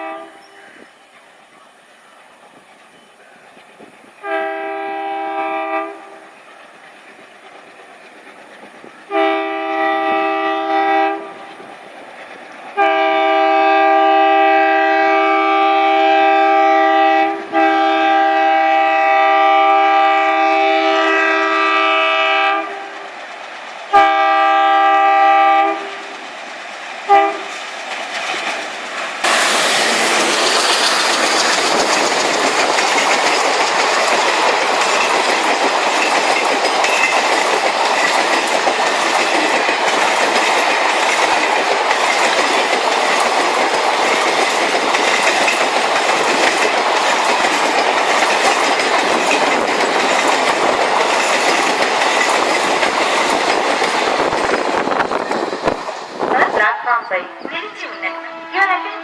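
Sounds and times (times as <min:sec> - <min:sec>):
locomotive horn blasts: 0:00.0 - 0:00.6, 0:04.2 - 0:06.2, 0:09.1 - 0:11.3, 0:12.8 - 0:22.9, 0:23.9 - 0:25.9, 0:27.1 - 0:27.5, 0:57.2 - 0:59.0
train passing with rush and rattle: 0:00.0 - 0:59.0.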